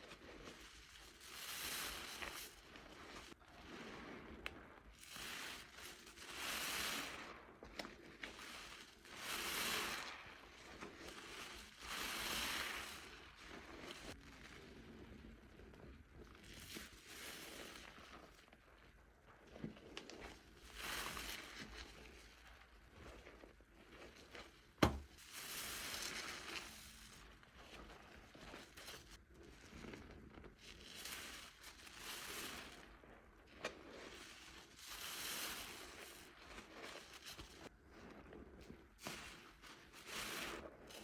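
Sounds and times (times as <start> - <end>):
soapy sponge squishing: 0.0 - 41.0
foam popping: 24.8 - 26.2.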